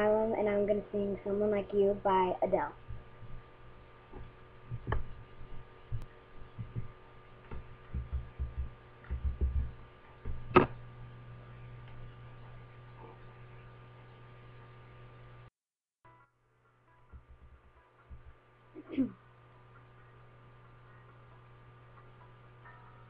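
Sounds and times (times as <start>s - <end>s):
low electrical hum: 0.0s - 15.5s, 16.1s - 23.0s
low thumps: 4.1s - 10.8s.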